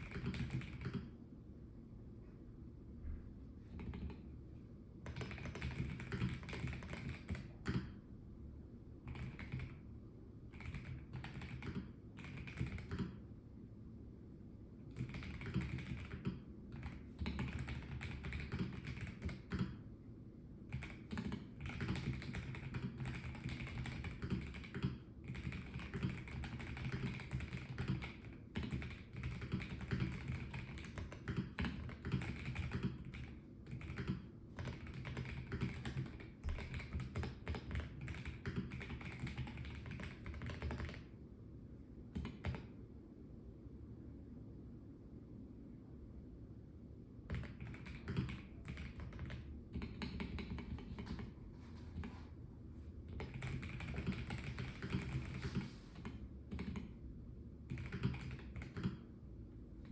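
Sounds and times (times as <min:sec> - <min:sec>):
mechanical keyboard keys clacking: 0:00.0 - 0:01.1, 0:05.0 - 0:07.9, 0:09.1 - 0:09.8, 0:10.5 - 0:13.2, 0:14.9 - 0:19.7, 0:20.7 - 0:41.1, 0:47.3 - 0:51.3, 0:53.1 - 0:56.9, 0:57.7 - 0:59.0.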